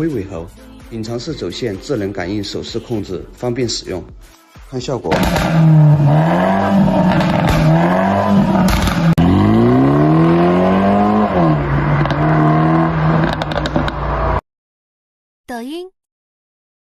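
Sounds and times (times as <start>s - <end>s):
car engine revving: 5.1s - 14.4s
exhaust crackles: 5.1s - 14.4s.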